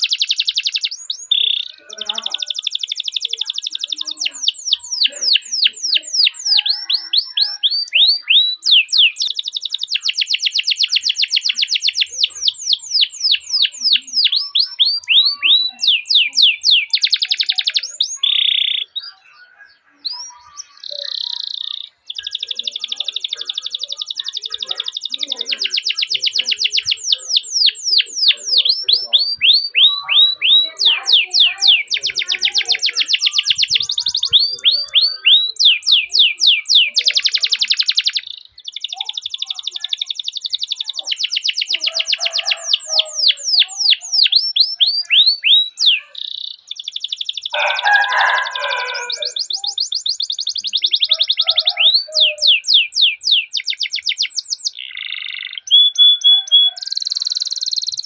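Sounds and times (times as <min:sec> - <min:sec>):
canary singing: 0:00.0 - 0:58.0.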